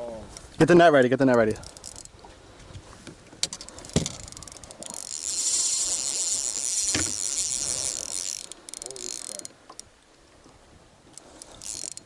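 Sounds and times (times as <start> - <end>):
fishing reel ratcheting whir: 1.4 - 2.2, 3.5 - 9.9, 11.1 - 12.0.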